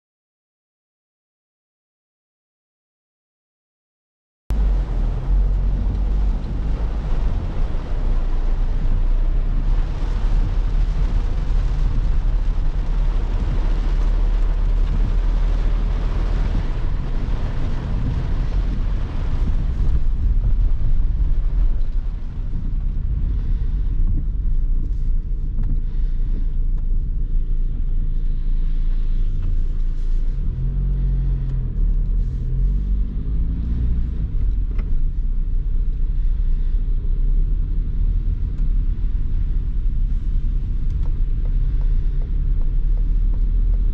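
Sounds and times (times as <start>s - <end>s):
van engine and road rumble: 4.5s - 43.9s
tyres hissing on wet road: 4.6s - 22.6s.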